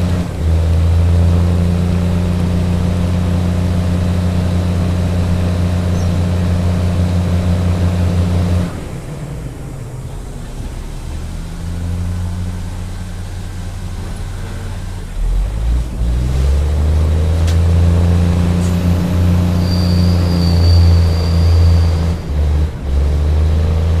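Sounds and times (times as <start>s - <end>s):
large engine humming: 0.0s - 24.0s
thin high squeal: 18.6s - 22.2s.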